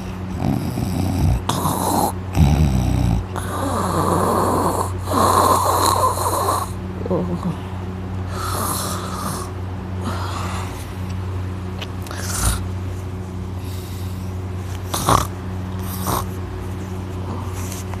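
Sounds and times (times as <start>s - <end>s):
steady low hum: 0.0s - 18.0s
man snoring heavily: 0.3s - 6.8s, 8.3s - 10.8s, 12.1s - 12.6s, 14.9s - 16.3s.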